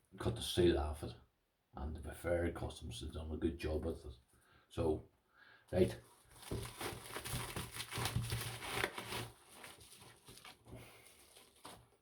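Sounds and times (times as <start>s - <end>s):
packaging rustling and crinkling: 6.0s - 12.0s.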